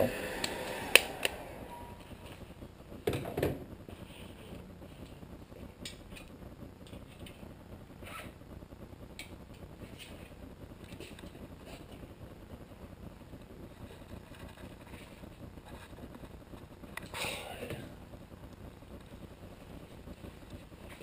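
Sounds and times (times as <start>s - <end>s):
hot-air gun blower: 0.0s - 1.8s.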